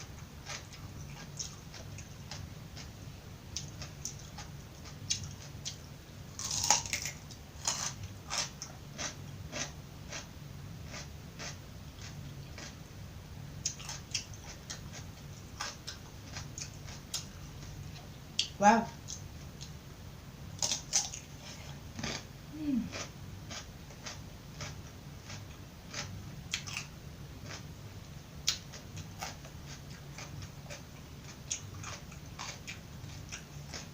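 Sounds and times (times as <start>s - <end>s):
chewing crunches: 0.4s - 3.0s, 3.6s - 5.8s, 6.4s - 12.8s, 13.6s - 19.7s, 20.6s - 27.7s, 28.4s - 33.9s
crunching bite of raw vegetables: 6.4s - 12.8s, 20.6s - 27.7s, 28.4s - 33.9s.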